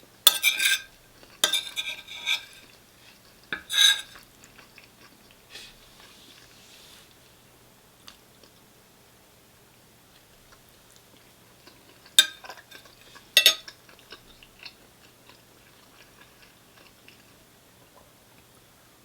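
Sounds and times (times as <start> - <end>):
cutlery clicking on container: 0.3 - 2.6, 13.4 - 13.7
soft chewing: 0.5 - 8.8, 10.0 - 18.7.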